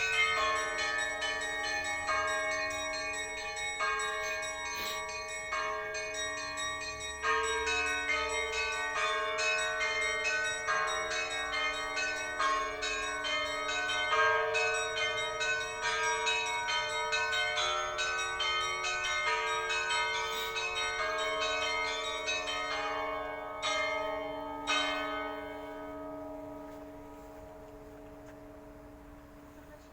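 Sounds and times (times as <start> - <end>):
church bells ringing: 0.0 - 29.9.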